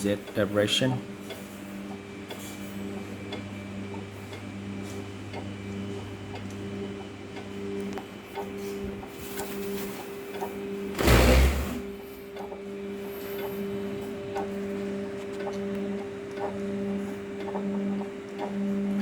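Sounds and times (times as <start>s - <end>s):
stepper motor whine: 10.9s - 12.0s
loud brief bump: 11.0s - 11.9s.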